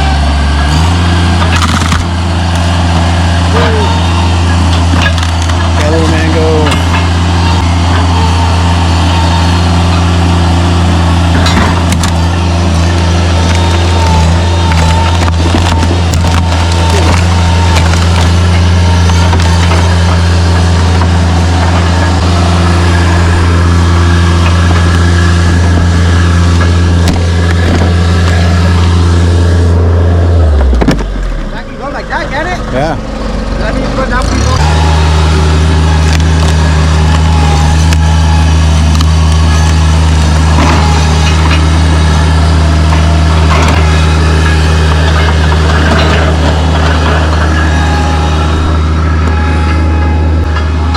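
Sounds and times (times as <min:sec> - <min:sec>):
truck engine idling: 0:00.0 - 0:50.9
clatter and knocks: 0:11.3 - 0:22.2, 0:38.7 - 0:49.8.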